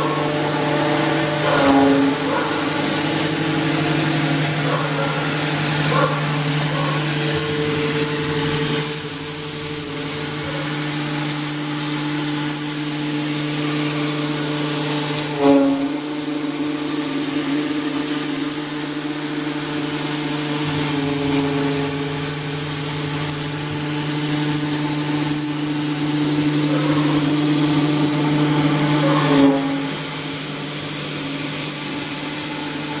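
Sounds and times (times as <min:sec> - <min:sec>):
router motors humming: 0:00.0 - 0:33.0
short gliding whine: 0:13.0 - 0:25.4.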